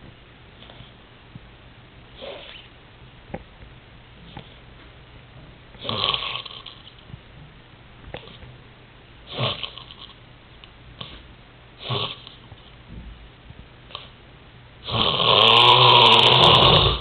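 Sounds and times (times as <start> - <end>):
loud snores: 5.8 - 6.8, 9.3 - 10.0, 11.8 - 12.3, 14.8 - 17.0.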